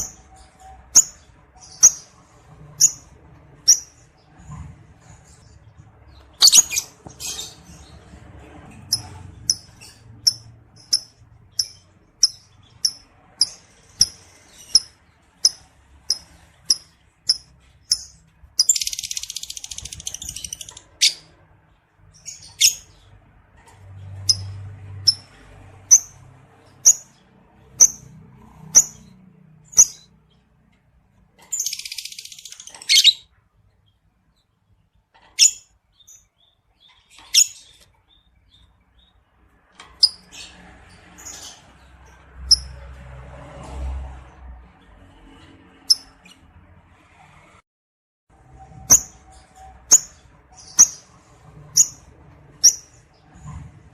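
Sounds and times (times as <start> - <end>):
bird chirping: 0.0 - 42.8, 48.6 - 53.6
bird harsh rapid chatter: 0.9 - 8.1, 8.8 - 21.3.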